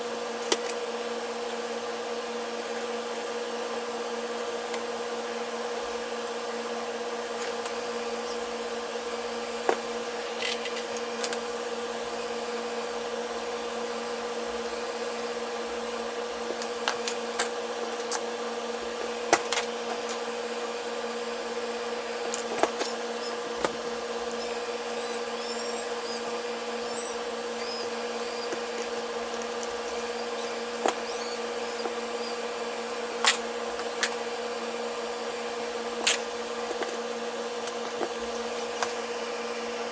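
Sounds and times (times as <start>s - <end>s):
small motor humming: 18.6s - 39.2s.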